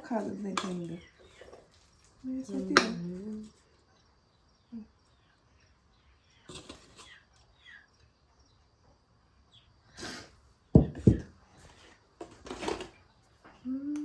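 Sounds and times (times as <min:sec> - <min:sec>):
cake tin scraping rustles: 0:06.5 - 0:07.2
heavy thumps: 0:10.8 - 0:11.3.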